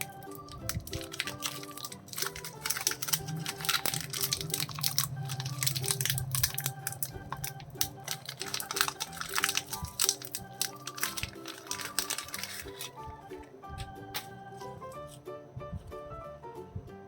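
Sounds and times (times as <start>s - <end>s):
plastic wrappers crinkling and tearing: 0.0s - 13.1s
background music: 0.0s - 17.0s.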